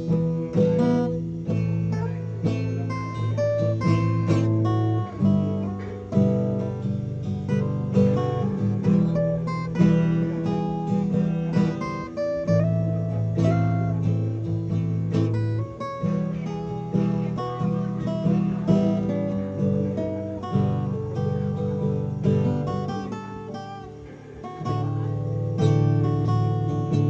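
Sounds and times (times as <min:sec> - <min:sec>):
acoustic guitar playing: 0:00.0 - 0:27.0.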